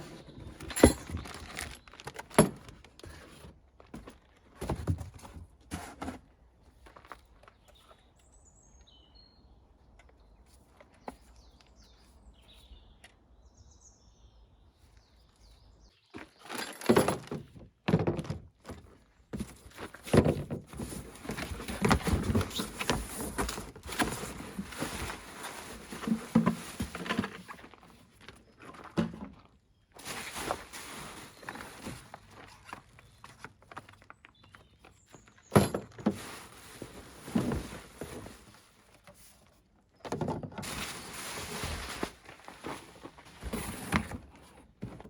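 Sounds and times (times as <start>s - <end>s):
packaging rustling and knocking: 0.5s - 2.8s, 19.4s - 27.7s, 35.5s - 38.6s, 40.1s - 45.0s.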